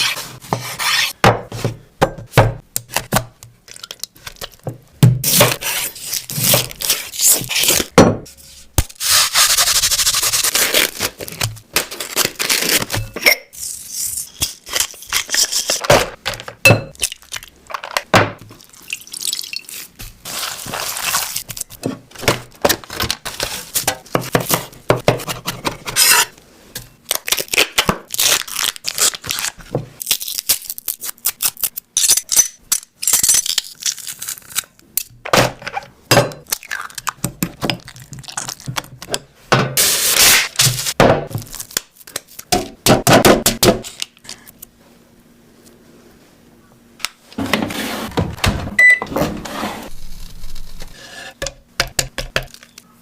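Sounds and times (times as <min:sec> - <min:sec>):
food crunching and tearing: 0:27.1 - 0:31.9, 0:33.0 - 0:34.9, 0:37.8 - 0:39.0.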